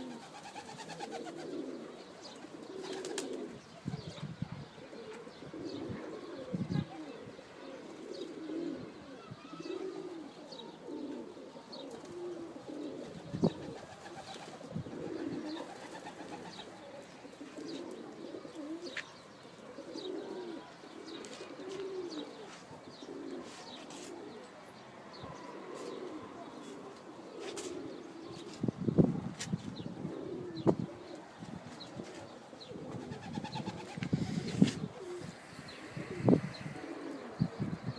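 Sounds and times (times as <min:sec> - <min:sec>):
pigeons cooing: 0:00.0 - 0:37.9.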